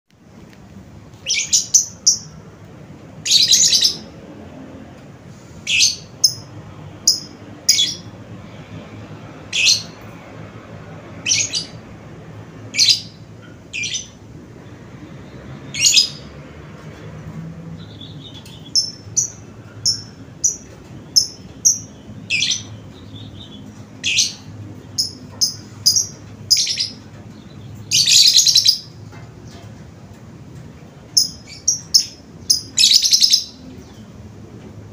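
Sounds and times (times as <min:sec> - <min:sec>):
bird chirping: 0:01.2 - 0:02.5, 0:03.2 - 0:04.3, 0:05.6 - 0:08.3, 0:09.4 - 0:10.2, 0:11.0 - 0:11.9, 0:12.6 - 0:29.8, 0:31.0 - 0:34.2.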